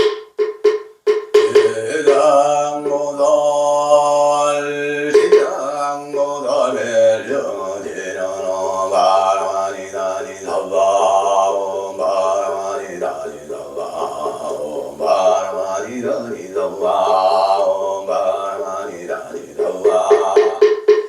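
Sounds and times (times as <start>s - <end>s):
man chanting in held tones: 1.4s - 20.8s.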